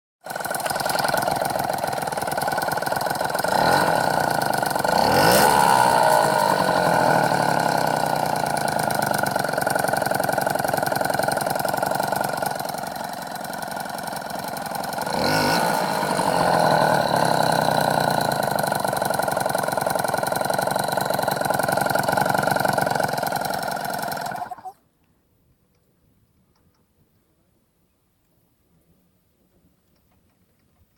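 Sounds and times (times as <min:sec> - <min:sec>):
metallic clicking from engine: 0:00.2 - 0:24.8
moped engine idling and revving: 0:00.2 - 0:24.8.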